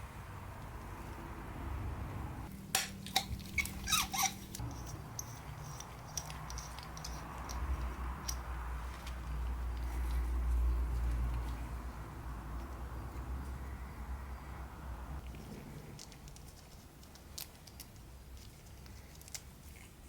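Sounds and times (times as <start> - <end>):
short squeaks: 3.2 - 5.8.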